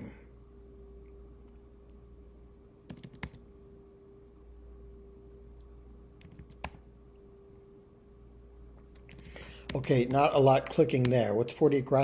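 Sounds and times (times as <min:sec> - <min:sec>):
faint steady hum: 0:00.0 - 0:12.0
keyboard keystrokes: 0:02.9 - 0:03.4, 0:06.2 - 0:06.8.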